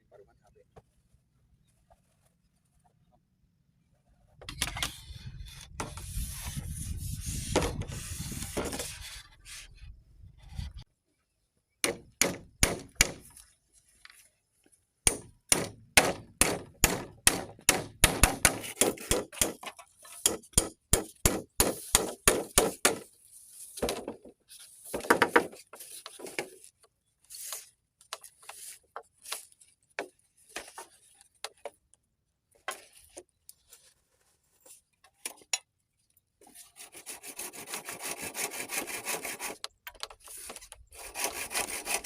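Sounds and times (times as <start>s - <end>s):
rough rubbing and handling noise: 5.0s - 10.8s, 21.6s - 31.8s
hand saw rasping through wood: 36.5s - 39.7s, 40.3s - 42.0s.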